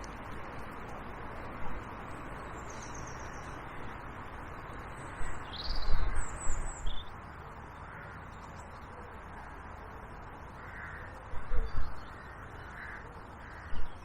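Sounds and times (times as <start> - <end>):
small birds chirping: 1.7 - 8.9.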